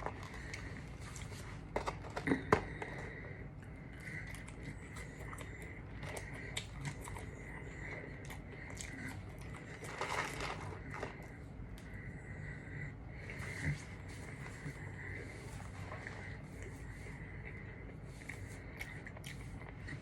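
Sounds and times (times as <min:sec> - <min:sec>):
chewing and crunching: 0:00.0 - 0:20.0
paper packaging crinkling: 0:09.7 - 0:11.2.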